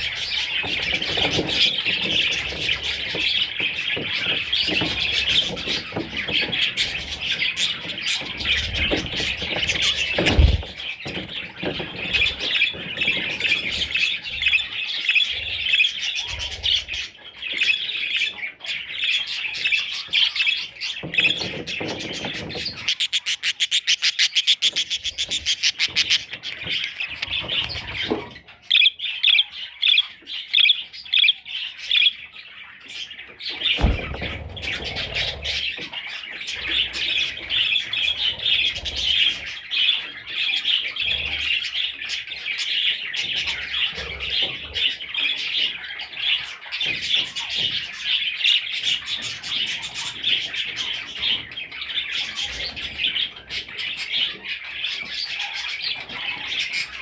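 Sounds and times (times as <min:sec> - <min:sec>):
bird chicks chirping: 0:00.0 - 0:57.0
low thump: 0:33.8 - 0:34.4.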